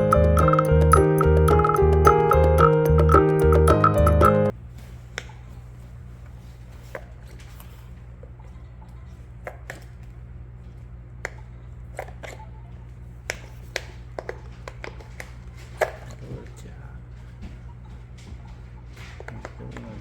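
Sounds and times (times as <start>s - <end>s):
sharp clicks and taps: 0.0s - 4.5s.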